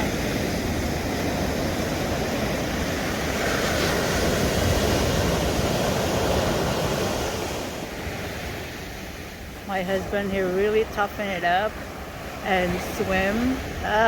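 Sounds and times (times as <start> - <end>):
surf breaking on beach: 0.0 - 14.0.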